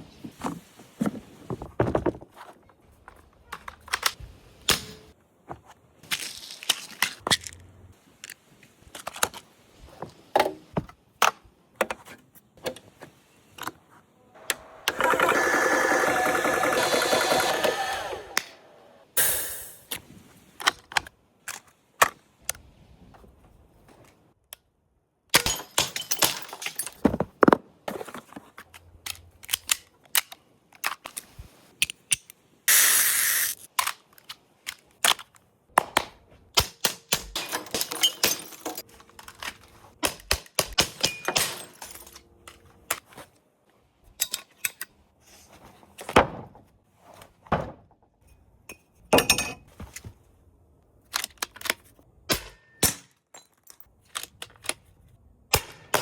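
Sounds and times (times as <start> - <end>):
airsoft gun clicks and shots: 31.8 - 38.0, 39.3 - 41.5, 53.8 - 56.0.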